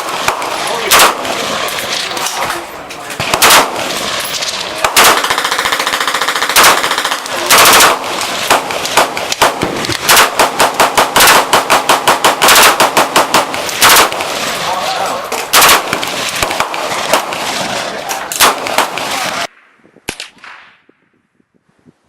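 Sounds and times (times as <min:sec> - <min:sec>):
rapid gunfire burst: 0:00.0 - 0:01.7, 0:03.2 - 0:04.2, 0:04.8 - 0:14.5, 0:15.5 - 0:19.5
single gunshots: 0:00.0 - 0:02.1, 0:03.2 - 0:14.4, 0:15.4 - 0:17.6, 0:18.3 - 0:20.9.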